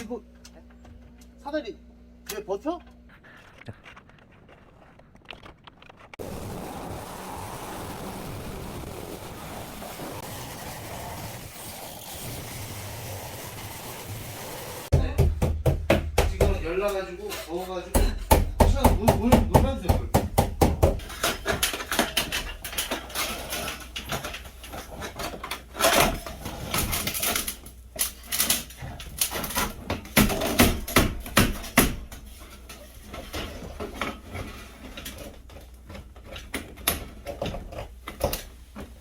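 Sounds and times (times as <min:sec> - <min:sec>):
knocking on metal flue pipe: 0:14.9 - 0:16.7, 0:18.0 - 0:21.0.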